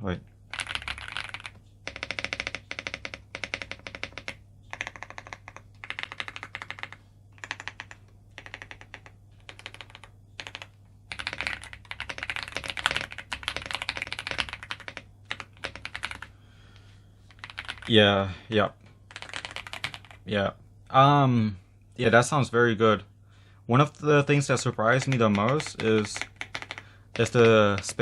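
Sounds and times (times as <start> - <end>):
mechanical keyboard typing: 0.5 - 16.3, 17.3 - 18.0, 19.1 - 20.2, 24.2 - 28.0.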